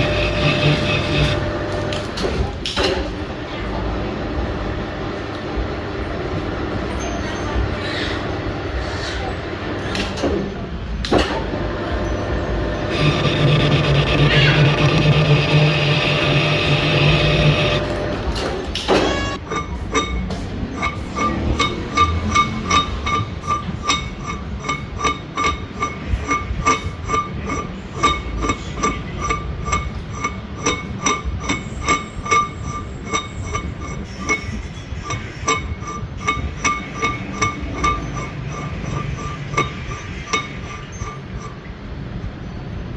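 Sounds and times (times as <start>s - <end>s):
hammer ringing on steel: 19.1s - 41.6s.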